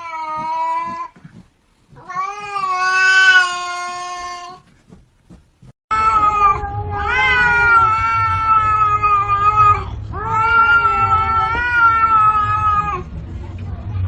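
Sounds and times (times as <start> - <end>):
cat yowling: 2.0 - 4.6, 5.9 - 13.1.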